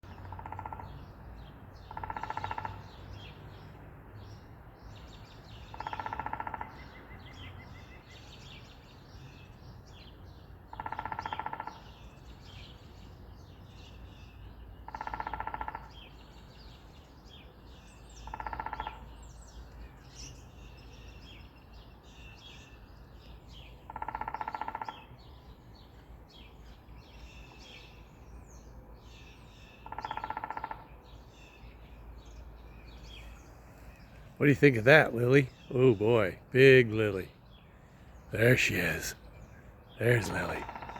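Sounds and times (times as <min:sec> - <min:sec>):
woodpecker drumming: 0:00.2 - 0:00.8, 0:01.9 - 0:02.8, 0:05.7 - 0:06.8, 0:10.7 - 0:11.8, 0:14.9 - 0:16.0, 0:18.2 - 0:19.1, 0:23.8 - 0:25.1, 0:29.8 - 0:30.9, 0:38.4 - 0:40.9
small birds chirping: 0:01.4 - 0:40.9.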